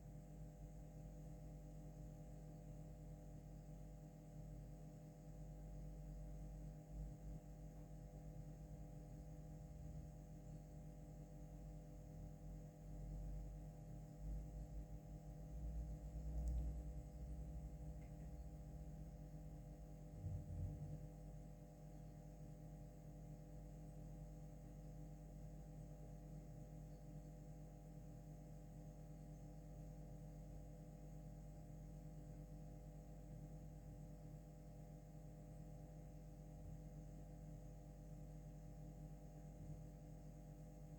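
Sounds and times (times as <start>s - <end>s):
low electrical hum: 0.0s - 40.9s
soft low rumbles: 20.1s - 21.0s.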